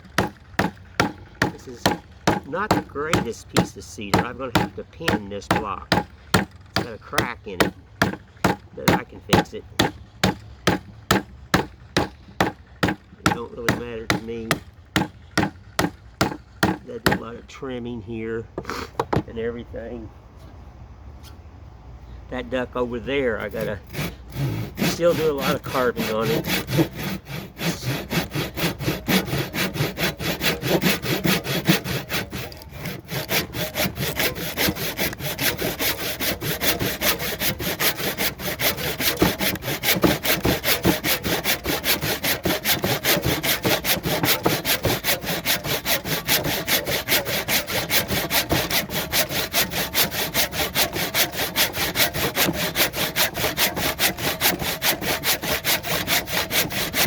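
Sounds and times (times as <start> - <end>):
hand tool cutting wood: 0.0 - 17.4, 23.1 - 57.0.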